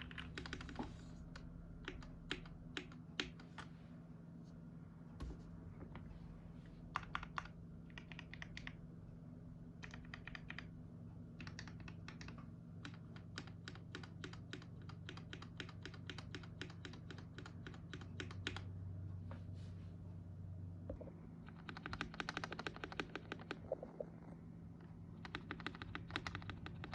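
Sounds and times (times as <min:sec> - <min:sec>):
mechanical keyboard typing: 0:00.0 - 0:03.6, 0:06.9 - 0:08.8, 0:09.8 - 0:10.7, 0:11.4 - 0:18.7, 0:21.5 - 0:23.6, 0:25.1 - 0:26.9
faint low hum: 0:00.0 - 0:26.9.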